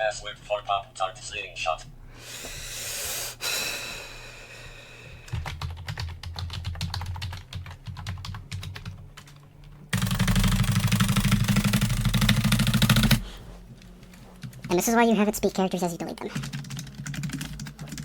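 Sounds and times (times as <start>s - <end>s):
computer keyboard typing: 5.3s - 9.4s, 10.0s - 13.2s, 16.0s - 18.0s.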